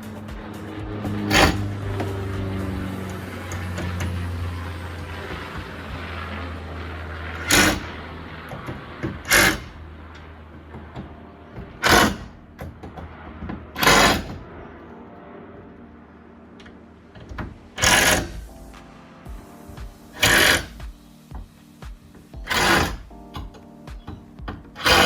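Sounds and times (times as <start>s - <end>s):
power driver running: 0.3s - 11.0s, 11.7s - 12.4s, 17.8s - 18.5s, 20.2s - 20.8s.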